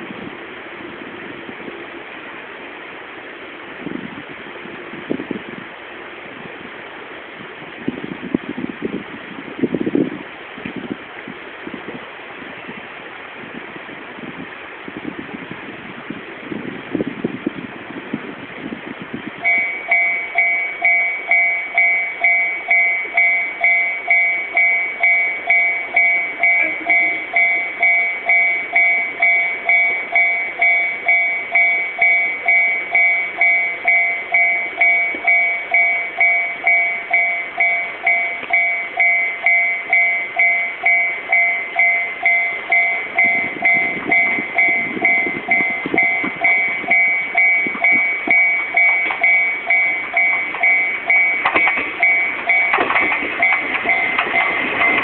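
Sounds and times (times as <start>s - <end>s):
low rumble: 7.4s - 55.0s
level crossing bell ringing: 19.4s - 55.0s.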